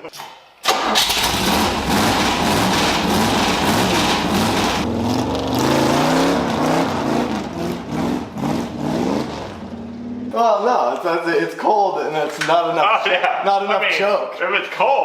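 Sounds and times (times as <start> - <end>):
engine revs rising and falling: 0.7 - 10.4.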